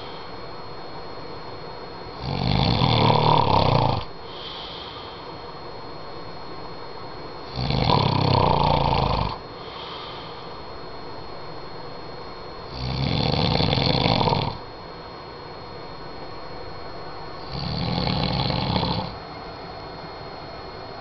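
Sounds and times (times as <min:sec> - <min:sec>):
man snoring: 0:02.2 - 0:05.2, 0:07.5 - 0:10.5, 0:12.7 - 0:14.6, 0:17.4 - 0:19.2
soft breath: 0:04.2 - 0:05.5, 0:09.5 - 0:10.7.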